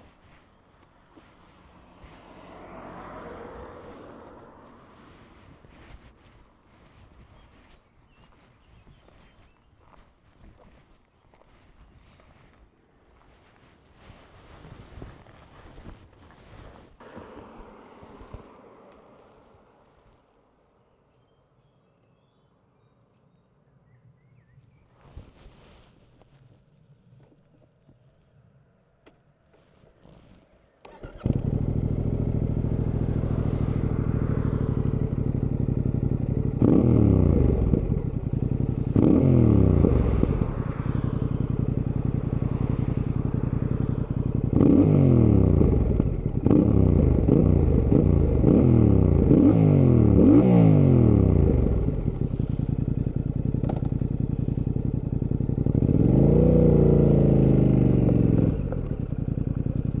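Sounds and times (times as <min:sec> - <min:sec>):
motorcycle engine revving: 0:00.0 - 0:10.0, 0:13.2 - 0:20.3, 0:30.0 - 1:00.0.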